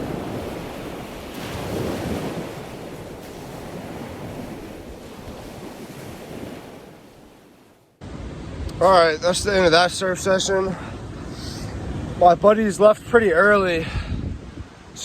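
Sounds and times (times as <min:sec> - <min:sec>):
ocean waves washing: 0:00.0 - 0:15.0
wind buffeting microphone: 0:00.0 - 0:15.0.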